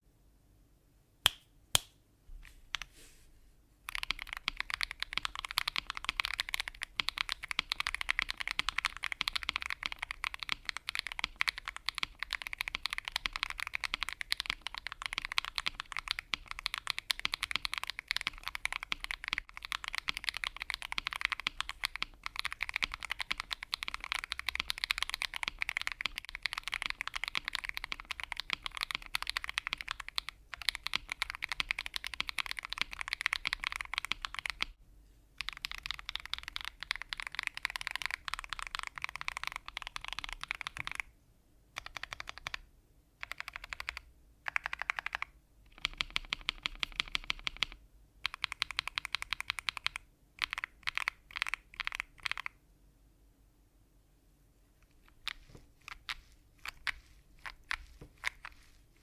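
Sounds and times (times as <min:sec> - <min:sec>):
keyboard clicks: 0:03.9 - 0:34.7, 0:35.4 - 0:41.1, 0:41.8 - 0:42.6, 0:43.2 - 0:52.6, 0:54.8 - 0:58.8
mechanical keyboard typing: 0:03.9 - 0:34.8, 0:35.4 - 0:41.1, 0:41.8 - 0:42.6, 0:43.2 - 0:52.6, 0:54.8 - 0:58.8.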